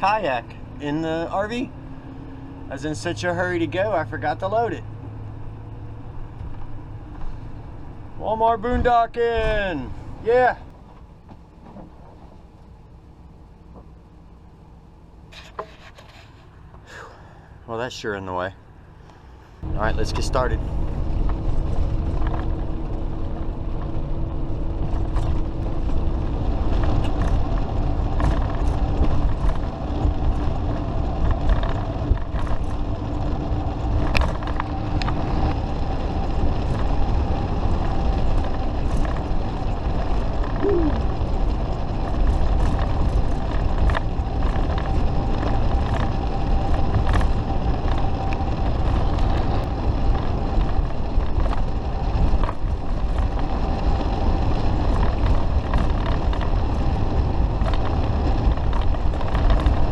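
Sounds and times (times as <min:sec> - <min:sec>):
road and engine rumble: 0:00.0 - 0:59.9
small rattles and clicks: 0:21.2 - 0:24.0, 0:24.8 - 0:59.9.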